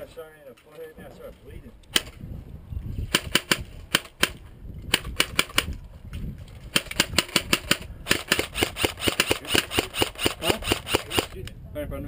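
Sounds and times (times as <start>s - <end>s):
airsoft guns firing: 3.1s - 5.8s, 6.7s - 11.4s.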